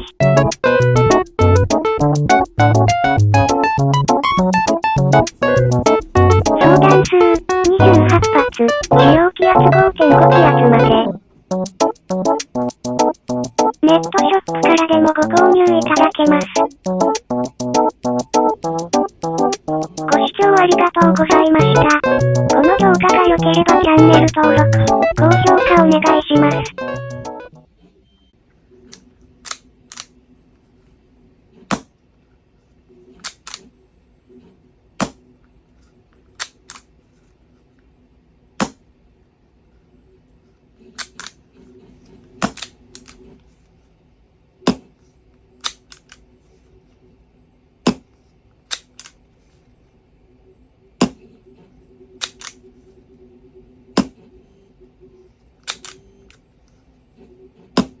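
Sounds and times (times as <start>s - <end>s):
rifle bolt clicks: 28.9s - 30.1s, 33.2s - 33.6s, 48.7s - 49.2s, 52.2s - 52.6s, 55.6s - 56.0s.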